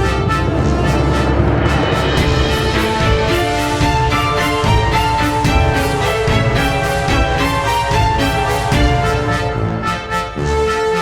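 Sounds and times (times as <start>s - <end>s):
brass-like instruments: 0.0s - 11.0s
instrumental music with sustained notes: 0.0s - 11.0s.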